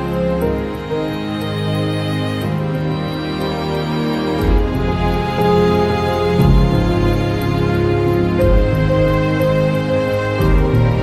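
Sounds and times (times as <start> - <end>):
slow gentle background music: 0.0 - 11.0.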